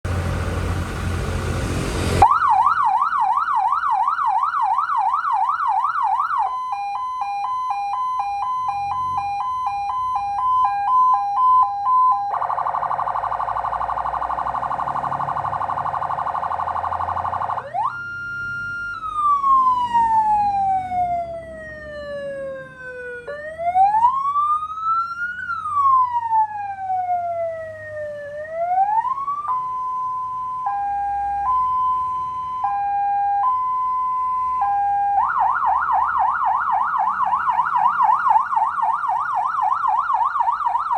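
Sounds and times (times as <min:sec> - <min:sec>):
electronic siren: 0:02.2 - 0:40.9.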